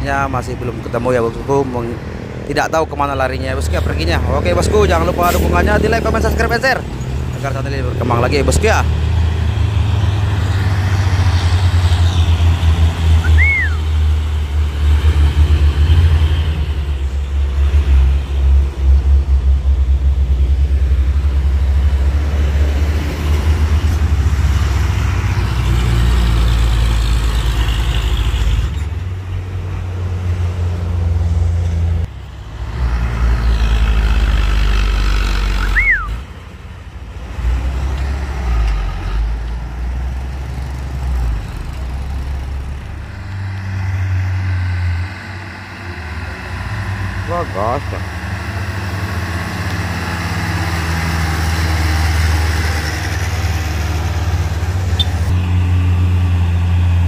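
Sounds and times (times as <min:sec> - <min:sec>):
diesel truck engines rumbling: 0:00.0 - 0:57.0
high chirps: 0:13.2 - 0:13.9, 0:35.6 - 0:36.2.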